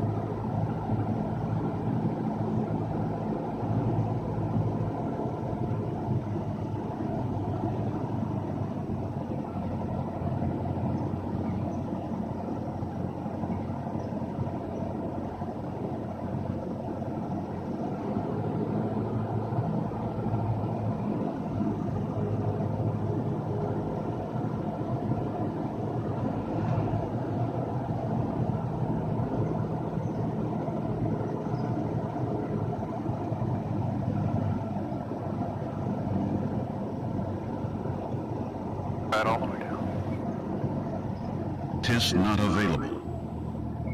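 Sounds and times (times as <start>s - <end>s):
aircraft piston engine humming: 38.7s - 43.6s.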